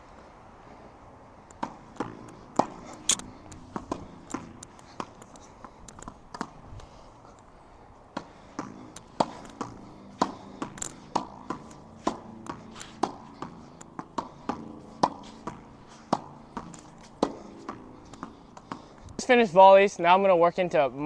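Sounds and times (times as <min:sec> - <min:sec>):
tennis ball on racket strings: 0:01.4 - 0:06.6, 0:08.1 - 0:18.8.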